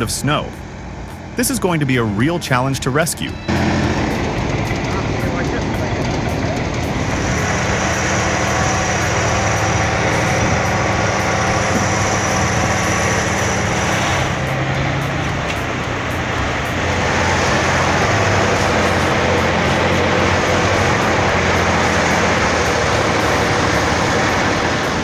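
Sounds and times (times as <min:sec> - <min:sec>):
tractor diesel engine droning: 0:00.0 - 0:25.0.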